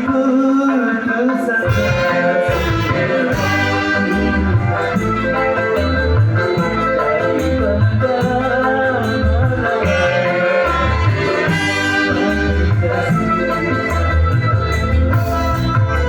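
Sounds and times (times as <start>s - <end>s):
keyboard melody: 0.0s - 16.0s
bass: 1.6s - 16.0s.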